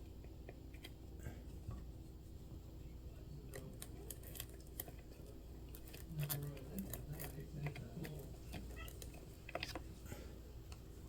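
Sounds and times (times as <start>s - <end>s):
faint clicks of small parts: 3.5s - 9.9s.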